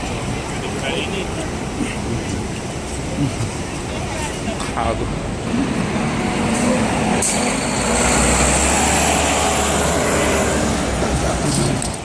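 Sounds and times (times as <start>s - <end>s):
heavy vehicle engine running: 0.0s - 12.0s
street traffic noise: 0.0s - 12.0s.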